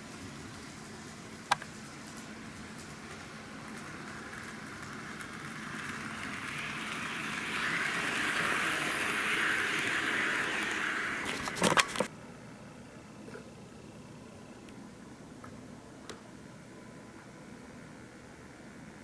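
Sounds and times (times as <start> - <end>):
model train motor and wheels: 0.0 - 12.1.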